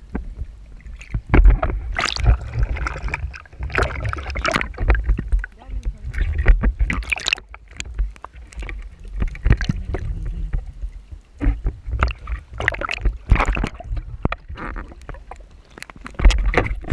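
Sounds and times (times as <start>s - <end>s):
water splashing and sloshing: 0.0s - 16.9s
low rumble: 1.4s - 12.5s.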